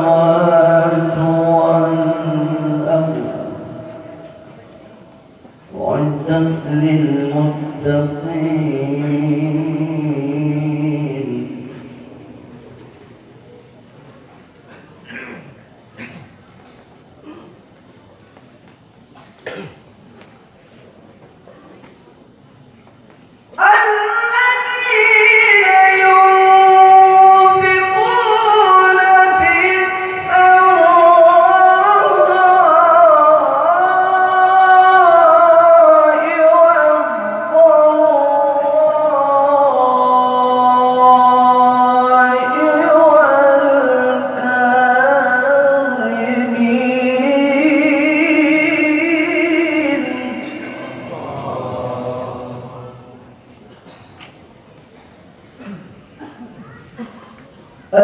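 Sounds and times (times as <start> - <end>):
person reciting melodically: 0.0 - 13.8, 23.5 - 54.3, 56.6 - 58.0.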